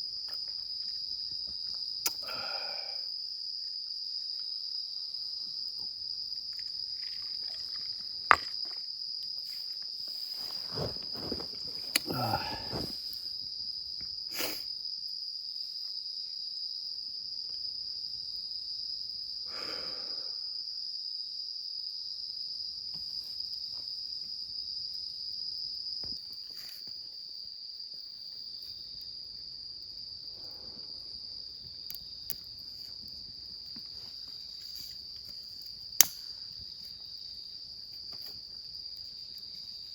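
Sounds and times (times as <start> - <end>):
insects chirring: 0.0 - 39.9
rustling and knocking: 10.1 - 12.0.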